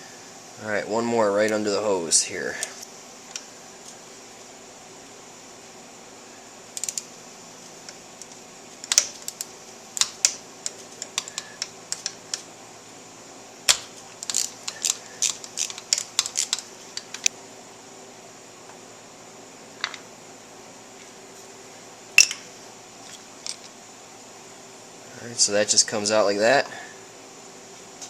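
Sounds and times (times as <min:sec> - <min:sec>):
ratchet wrench clicking: 0:06.8 - 0:07.0.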